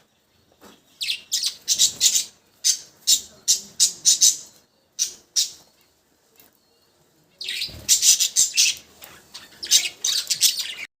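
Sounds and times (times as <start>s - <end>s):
budgerigars chirping: 7.4s - 10.9s.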